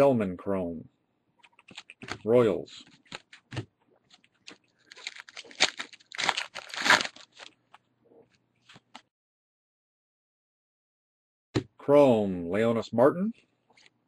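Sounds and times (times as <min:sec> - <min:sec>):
foil wrapper tearing and crinkling: 0:04.4 - 0:07.6.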